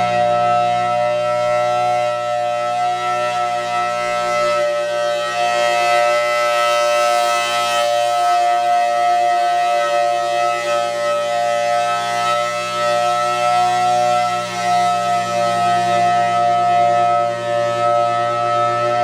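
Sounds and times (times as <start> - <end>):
siren steady loud tone: 0.0 - 19.0.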